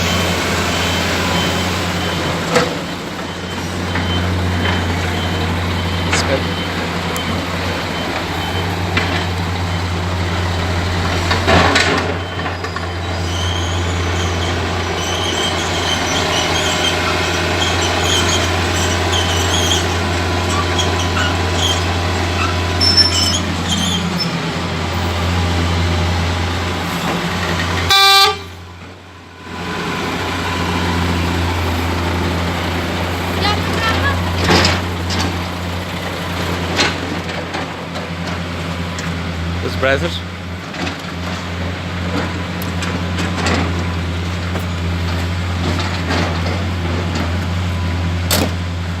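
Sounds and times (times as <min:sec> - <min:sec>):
vehicle engine droning: 0:00.0 - 0:49.0
horn blast: 0:27.9 - 0:28.6.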